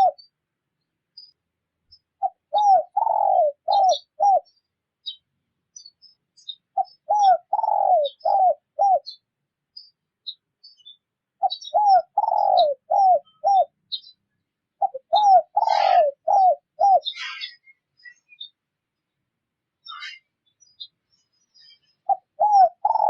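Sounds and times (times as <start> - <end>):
dove cooing: 0.0 - 0.2, 2.2 - 4.5, 6.7 - 9.2, 11.4 - 13.8, 14.8 - 17.6, 22.0 - 23.0
small birds chirping: 0.0 - 23.0.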